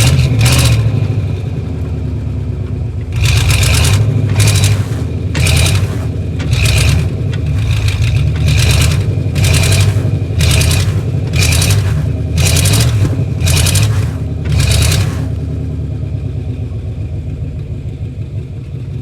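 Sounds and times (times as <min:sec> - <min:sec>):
engine droning under load: 0:00.0 - 0:19.0
tyre spinning in snow: 0:03.2 - 0:15.5.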